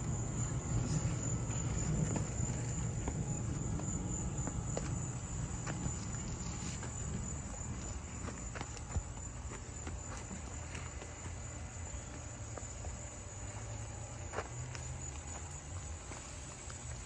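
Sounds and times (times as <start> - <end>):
high-pitched insect trill: 0.0 - 17.0.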